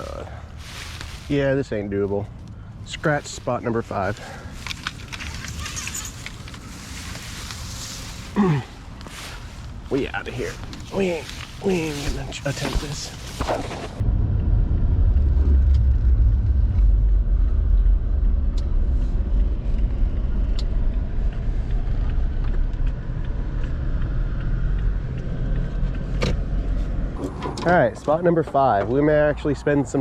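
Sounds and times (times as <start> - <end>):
car engine and road rumble: 0.0 - 30.0.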